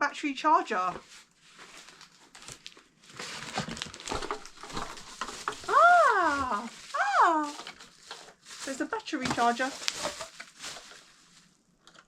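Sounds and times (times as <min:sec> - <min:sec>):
packaging crinkling: 0:01.0 - 0:12.0.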